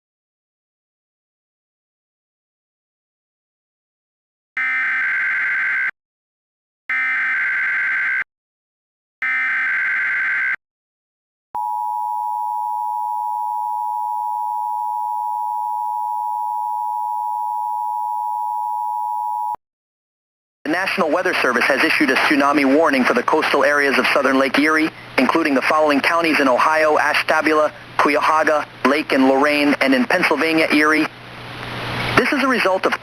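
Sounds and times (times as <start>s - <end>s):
steady attention tone: 11.6s - 19.6s.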